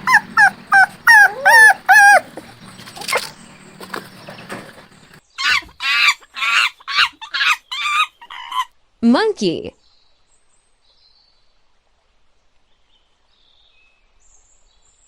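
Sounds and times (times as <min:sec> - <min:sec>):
dog barking harshly: 0:00.0 - 0:05.1
dog yelping and whining: 0:00.0 - 0:05.7.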